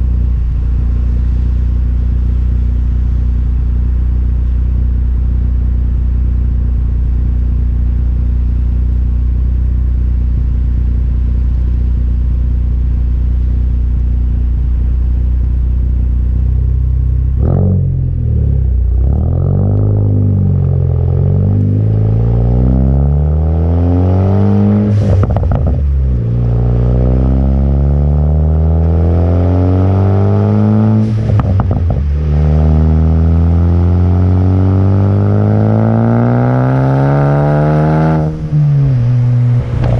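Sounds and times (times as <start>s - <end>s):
car exhaust revving through gears: 0.0s - 39.9s
exhaust crack on upshift: 24.6s - 27.6s, 30.9s - 33.5s, 38.8s - 39.9s.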